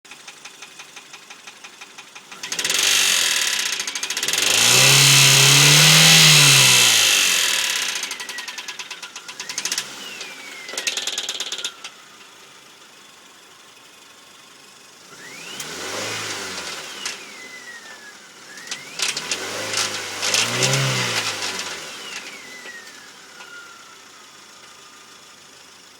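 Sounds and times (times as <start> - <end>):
car engine idling with knock: 0.1 - 25.9
engine revving: 2.3 - 12.1, 15.0 - 24.9.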